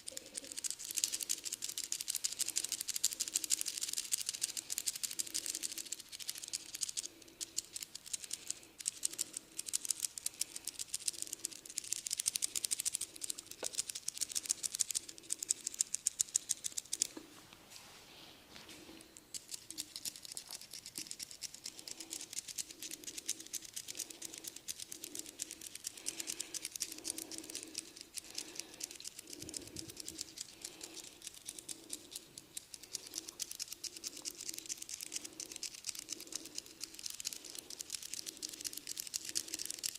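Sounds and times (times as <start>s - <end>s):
hands scratching hair and scalp: 19.4s - 39.9s.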